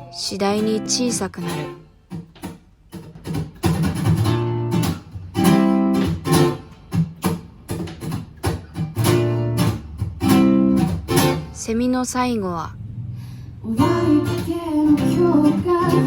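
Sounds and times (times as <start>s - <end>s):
acoustic guitar strumming: 0.0s - 11.7s, 13.7s - 16.0s.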